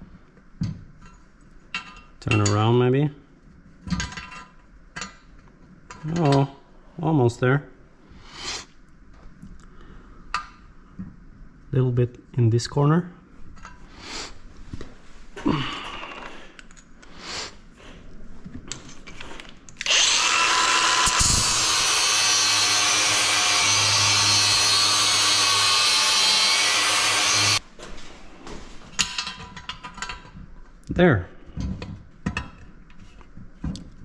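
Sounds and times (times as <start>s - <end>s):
power grinder grinding metal: 19.8s - 27.6s.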